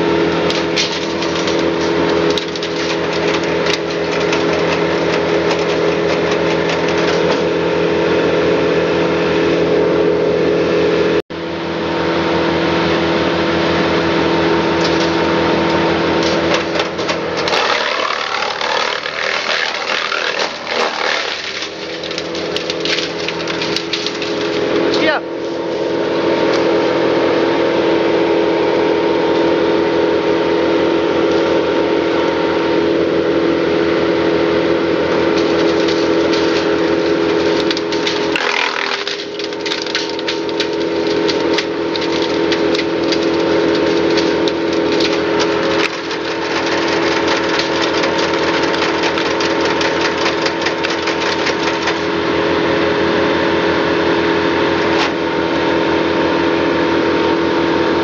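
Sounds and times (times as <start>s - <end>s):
wood crackling and splintering: 0.0s - 8.4s, 14.7s - 25.2s, 35.1s - 52.4s
wood chipper engine running: 0.0s - 58.0s.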